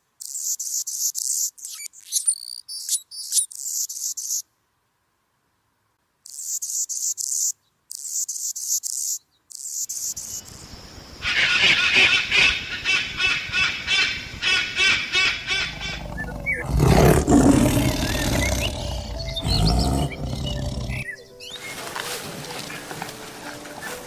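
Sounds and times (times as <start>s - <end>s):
high pulsing insect chirping: 6.3s - 11.8s, 15.7s - 21.6s
rhythmic repeated animal calls: 13.9s - 21.8s
loud low animal call: 15.2s - 21.1s.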